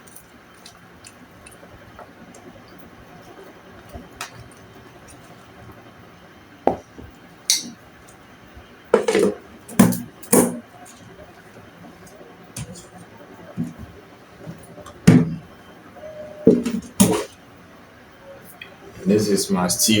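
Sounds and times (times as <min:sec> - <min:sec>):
dishes and cutlery clinking: 0:16.5 - 0:17.4.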